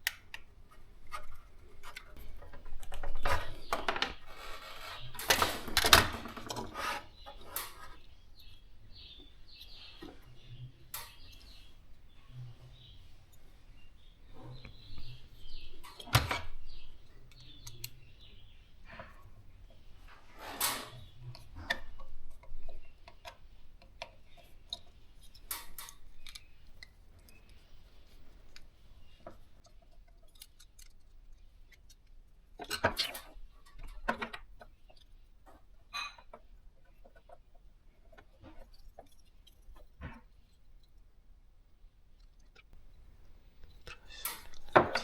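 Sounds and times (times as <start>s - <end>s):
objects clattering: 1.0s - 8.1s, 42.8s - 45.0s.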